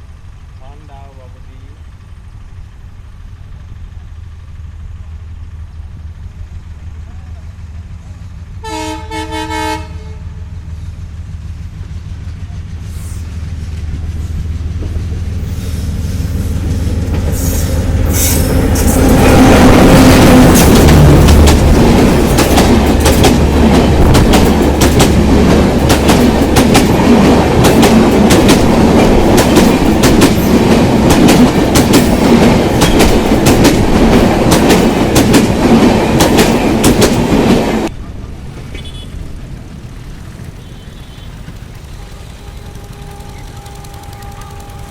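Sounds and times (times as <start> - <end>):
heavy train rumble: 0.0 - 44.9
train wheels clattering over rail joints: 16.7 - 44.9.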